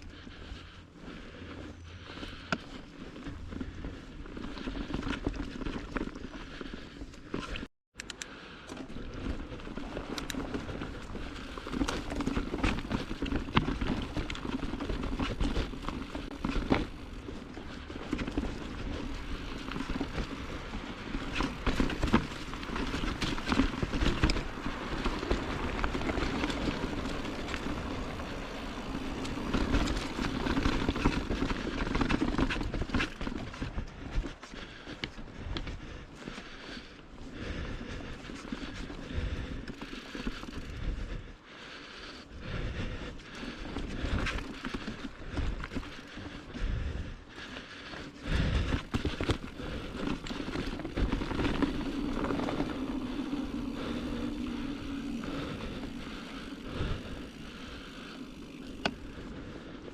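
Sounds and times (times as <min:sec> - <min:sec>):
bike tyres rolling on dirt trail: 0:00.0 - 0:07.7, 0:08.3 - 0:59.9
bike knocking and rattling over rocks: 0:02.2 - 0:07.7, 0:08.7 - 0:41.0, 0:42.6 - 0:59.9.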